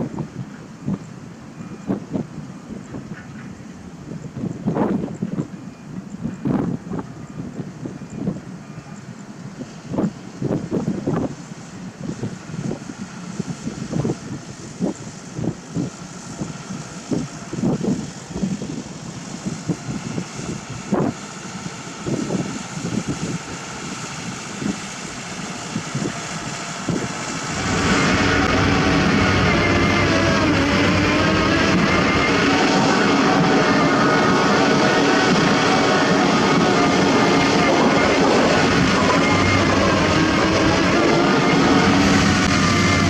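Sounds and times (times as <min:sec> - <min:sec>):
diesel engine droning: 0:15.8 - 0:43.0.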